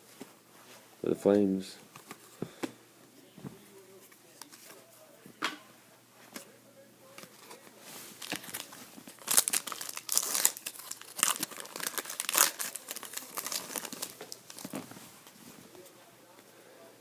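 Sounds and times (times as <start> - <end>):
wrapper tearing and crinkling: 8.2 - 14.9.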